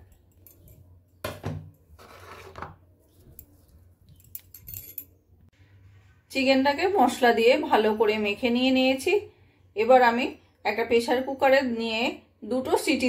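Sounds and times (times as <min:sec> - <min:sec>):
soft scrapes in a bowl: 0:01.9 - 0:03.9, 0:05.6 - 0:06.4.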